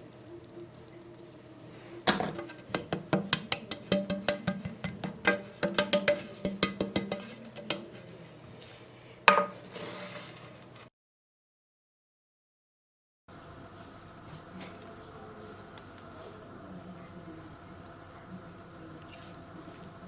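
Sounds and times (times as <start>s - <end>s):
utensil clattering against mixing bowl: 2.1s - 8.1s
ringing tap on bowl: 2.8s - 7.3s.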